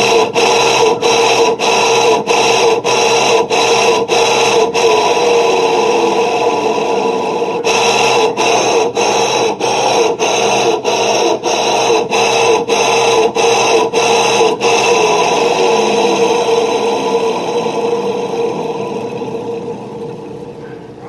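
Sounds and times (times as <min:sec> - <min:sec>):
washing machine running: 0:00.0 - 0:21.0.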